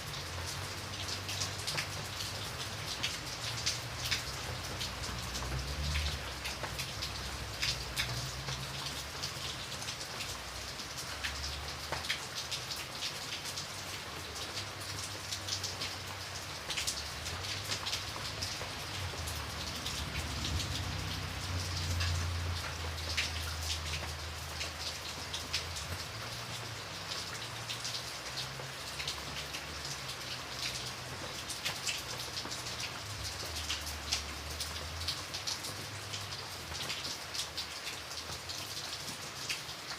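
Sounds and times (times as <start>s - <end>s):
rain pattering on a surface: 0.0s - 39.9s.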